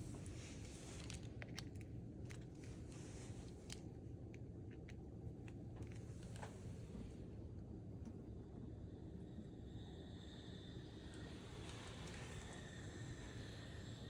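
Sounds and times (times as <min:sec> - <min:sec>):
faint clicks and handling noises: 0:00.0 - 0:07.2, 0:11.1 - 0:12.7
steady low hum: 0:00.0 - 0:14.0.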